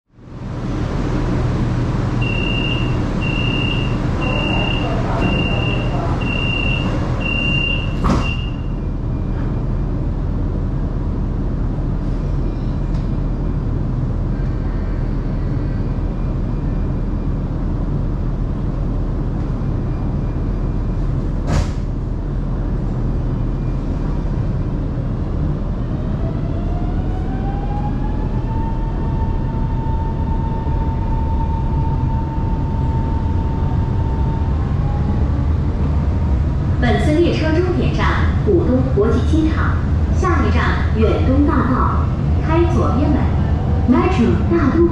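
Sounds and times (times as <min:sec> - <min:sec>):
train rumbling: 0:00.1 - 0:44.9
door warning beeping: 0:02.2 - 0:08.8.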